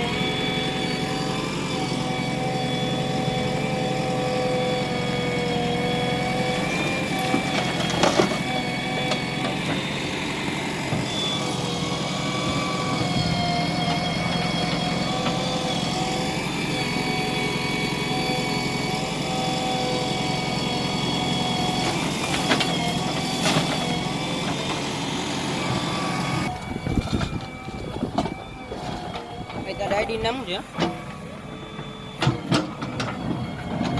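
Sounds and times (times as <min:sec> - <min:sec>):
heavy machinery diesel engine: 0:00.0 - 0:33.9.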